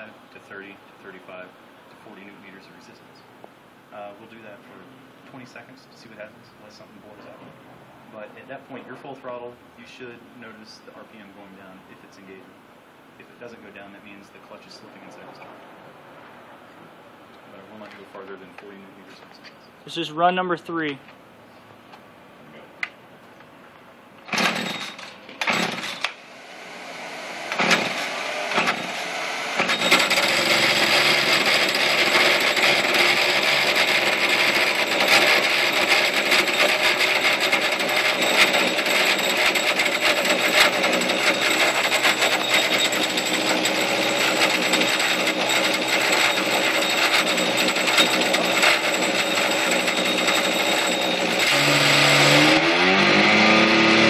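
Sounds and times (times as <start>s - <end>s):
chainsaw engine starting and running: 24.3s - 54.0s.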